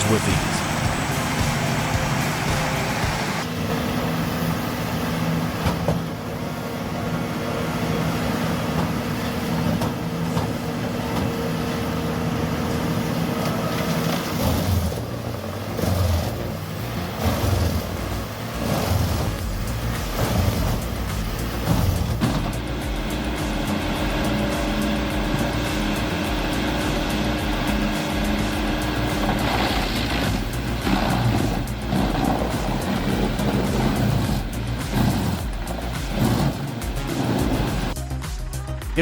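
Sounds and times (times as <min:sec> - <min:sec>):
grinder machine droning: 0:00.0 - 0:03.9, 0:11.8 - 0:38.0.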